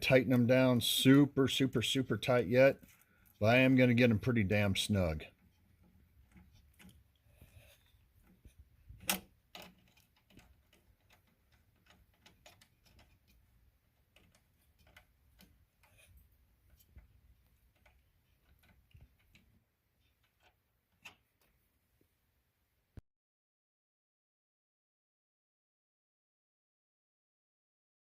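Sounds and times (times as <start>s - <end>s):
socket ratchet clicking: 8.9s - 13.4s.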